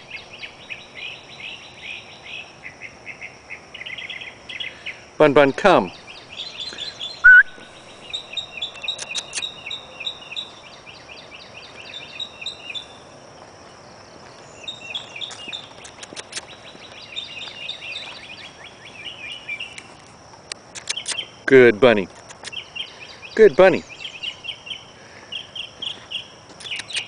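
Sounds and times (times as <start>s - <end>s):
insects droning: 0.0s - 27.0s
songbirds chirping: 0.0s - 27.0s
loud rising whistle: 7.2s - 7.6s
sharp clicks: 8.7s - 9.5s, 15.3s - 16.6s, 20.5s - 21.3s, 22.1s - 22.6s, 26.6s - 27.0s.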